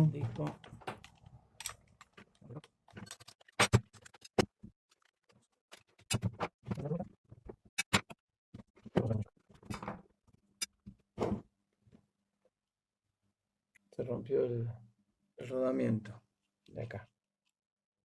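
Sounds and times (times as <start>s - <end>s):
clicks and knocks of parts: 0.4s - 6.5s.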